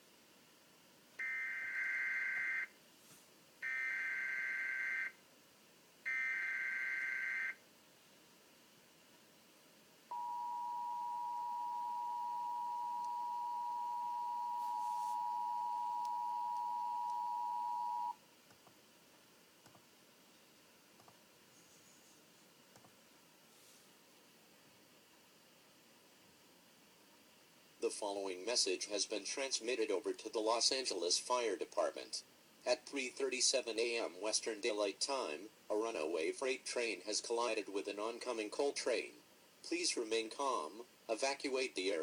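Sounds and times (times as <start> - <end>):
data tone bursts: 10.1 - 18.2
two-tone attention signal: 10.1 - 18.2.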